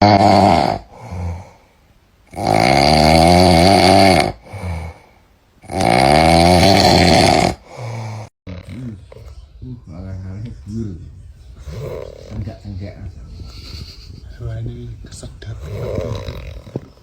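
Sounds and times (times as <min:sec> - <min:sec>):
loud rattling snoring: 0:00.0 - 0:01.5, 0:02.3 - 0:05.0, 0:05.6 - 0:07.9, 0:08.5 - 0:09.3, 0:11.6 - 0:14.0, 0:15.4 - 0:17.0.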